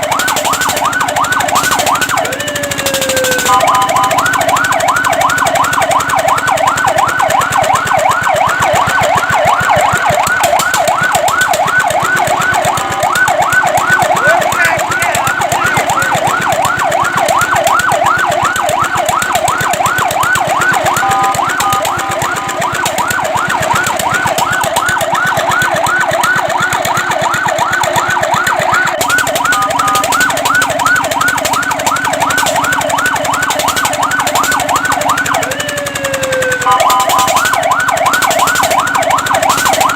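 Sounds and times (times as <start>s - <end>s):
fire truck siren yelp: 0.0s - 39.9s.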